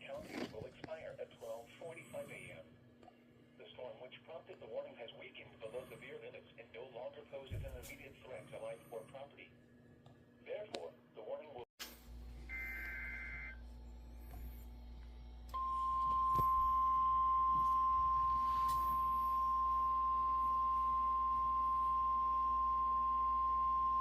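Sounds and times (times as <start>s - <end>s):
steady warning alarm tone: 12.5s - 14.6s, 15.5s - 24.0s.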